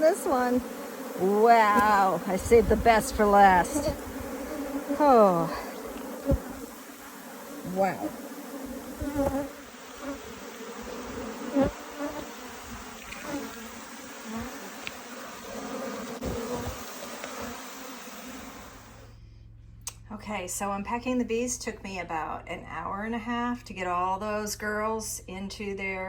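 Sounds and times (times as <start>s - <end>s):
single bees buzzing past: 0.0s - 19.0s
bees humming in a hive: 0.0s - 19.1s.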